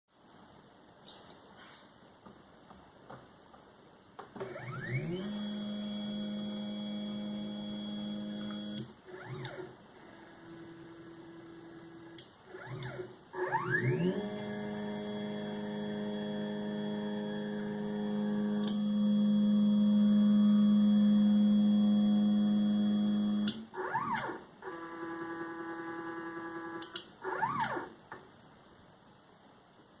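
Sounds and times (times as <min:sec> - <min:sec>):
stepper motors whining: 0:04.4 - 0:27.9.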